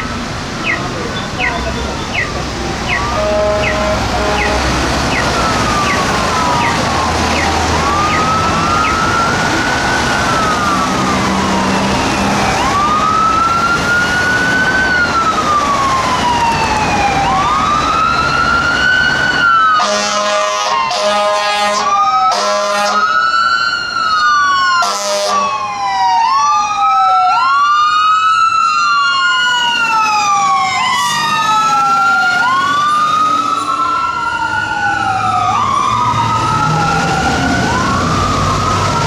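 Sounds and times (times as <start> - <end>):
short siren chirps: 0.0 - 9.3
fire engine sirens wailing: 0.0 - 39.0
air horn blast: 3.0 - 5.0, 19.8 - 23.1.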